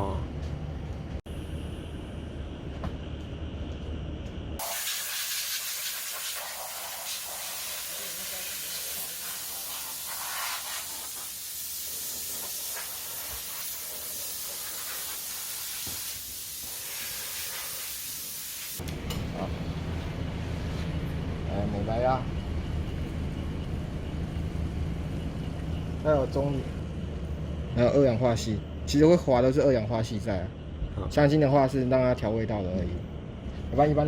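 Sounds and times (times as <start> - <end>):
high-pressure spray hissing: 4.6 - 18.8.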